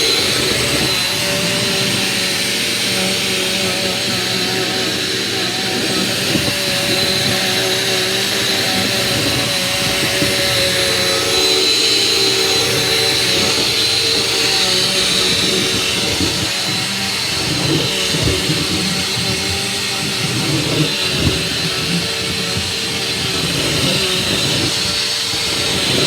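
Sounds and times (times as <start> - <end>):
vacuum cleaner running: 0.0 - 26.0.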